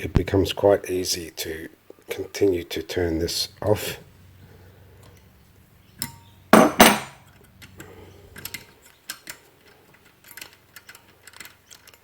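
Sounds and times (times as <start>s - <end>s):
metal clanks: 6.6s - 7.2s
tools clicking and clinking: 6.6s - 7.2s.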